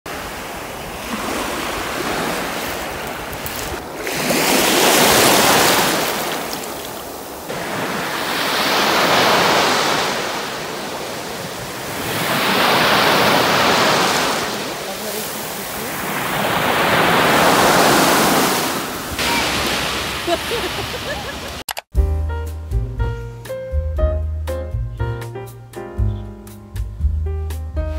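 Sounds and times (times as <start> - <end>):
sea waves washing onto shore: 0.1 - 21.7.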